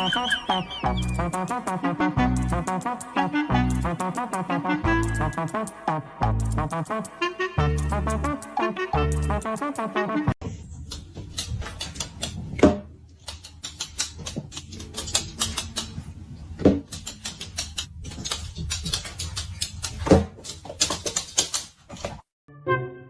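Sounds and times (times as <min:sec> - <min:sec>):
clicking and tapping: 0:10.8 - 0:22.2.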